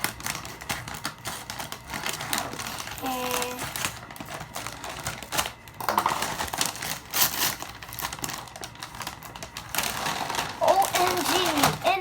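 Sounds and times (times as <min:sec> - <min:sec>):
paper crinkling and tearing: 0:00.0 - 0:12.0.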